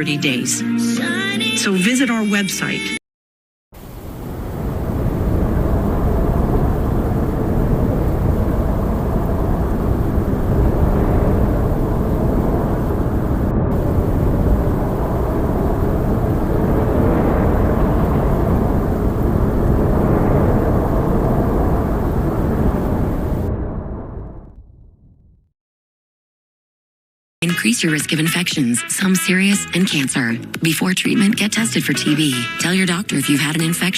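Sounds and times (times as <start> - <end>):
loud low rumbling: 3.8 - 25.5.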